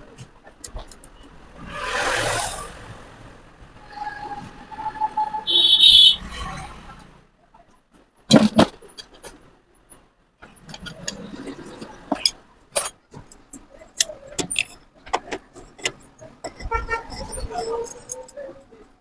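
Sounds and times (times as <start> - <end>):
metal parts clicking and clinking: 10.5 - 18.5.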